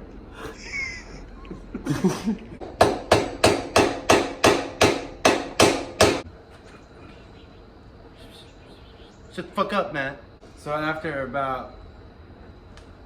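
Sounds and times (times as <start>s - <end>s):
hammer striking metal: 2.6s - 6.3s.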